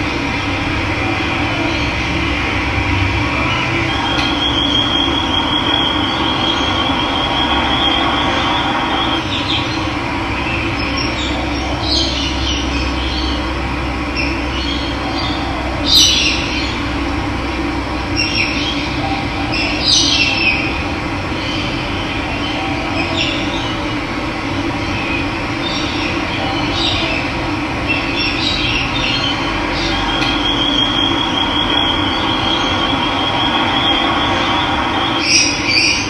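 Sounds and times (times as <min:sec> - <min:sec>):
thin high steady tone: 0:00.0 - 0:09.9, 0:28.2 - 0:36.0
birds chirping: 0:00.0 - 0:17.0, 0:24.6 - 0:36.0.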